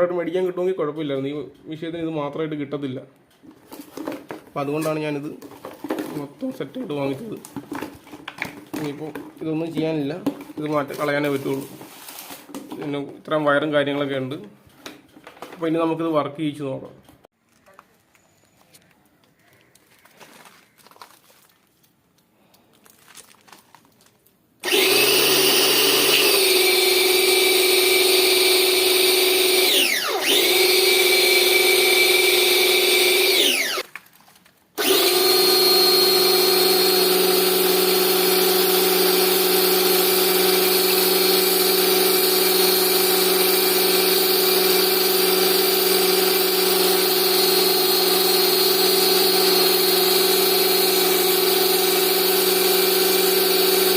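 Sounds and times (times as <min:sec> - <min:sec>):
pressure washer motor whine: 0:24.6 - 0:33.8, 0:34.8 - 0:53.9.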